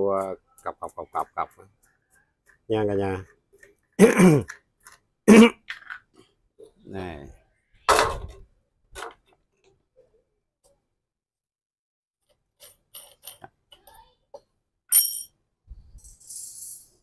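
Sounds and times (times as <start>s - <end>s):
ringing metallic clink: 14.9s - 15.4s.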